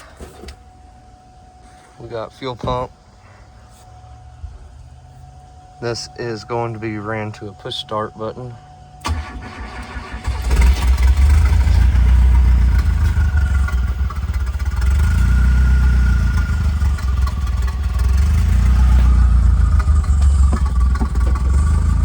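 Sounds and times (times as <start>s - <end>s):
turbocharged engine rumbling: 9.0s - 22.0s.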